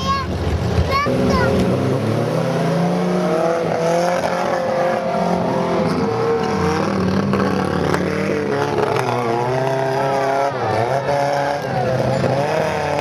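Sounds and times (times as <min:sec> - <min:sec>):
vehicle engine revving: 0:00.3 - 0:13.0.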